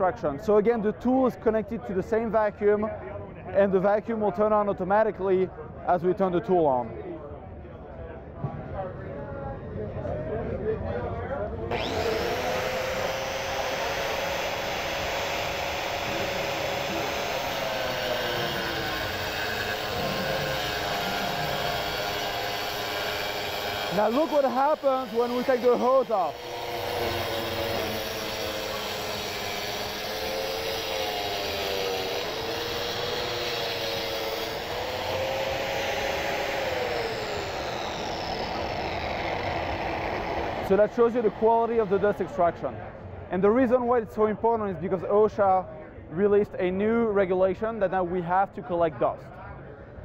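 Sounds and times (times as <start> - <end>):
concrete saw motor whining: 11.7 - 42.6
shop vacuum running: 11.7 - 42.6.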